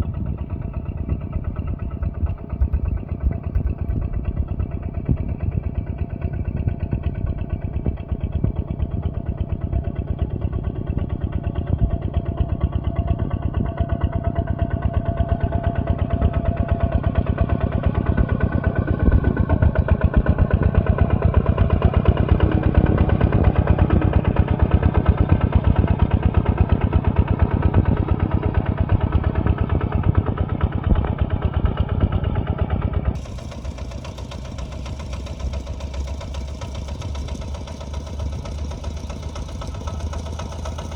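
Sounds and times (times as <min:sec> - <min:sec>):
diesel engine chugging: 0:00.0 - 0:40.9.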